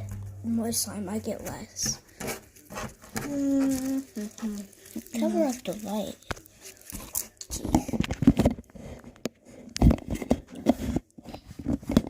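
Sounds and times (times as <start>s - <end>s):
slime squelching in hands: 2.0s - 8.0s.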